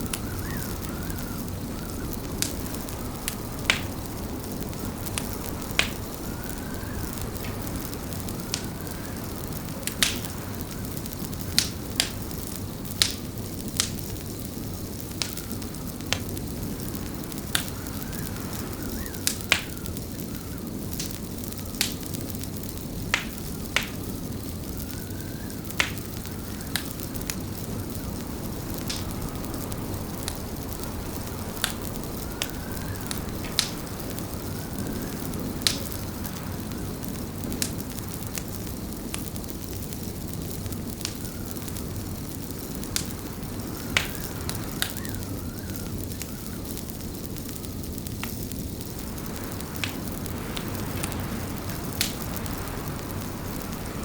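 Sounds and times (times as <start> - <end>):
wind rushing: 0.0 - 11.2, 24.8 - 38.1, 48.8 - 54.0
fireplace fire crackling: 0.0 - 54.0.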